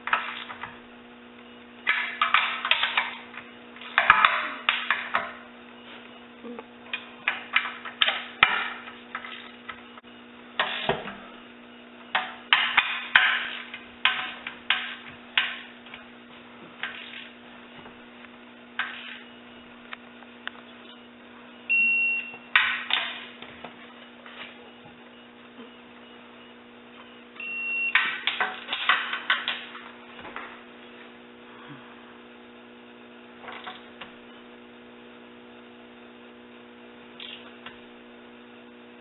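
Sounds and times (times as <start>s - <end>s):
short beep: 20.8s - 22.5s, 24.2s - 28.0s.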